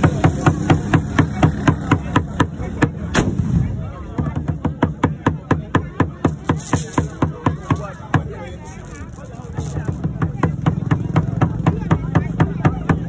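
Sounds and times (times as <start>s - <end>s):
fast percussive music beat: 9.5s - 13.0s.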